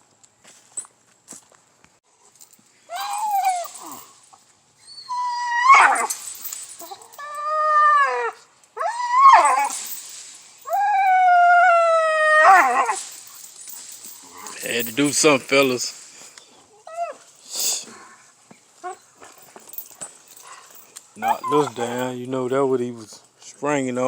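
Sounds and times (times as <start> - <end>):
dog whining and howling: 2.9 - 4.2, 4.8 - 14.6, 16.7 - 17.3, 20.3 - 22.0.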